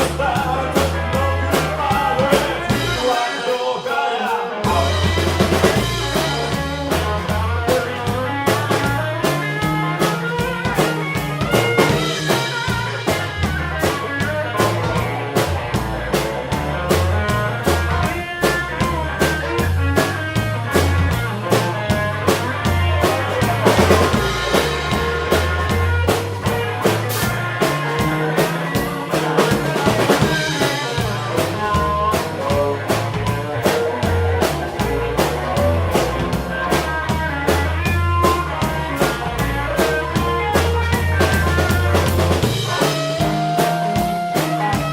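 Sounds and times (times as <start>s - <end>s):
bass line: 0.0s - 44.9s
drum kit beat: 0.0s - 44.9s
guitar: 0.0s - 44.9s
harmonica: 17.3s - 44.9s.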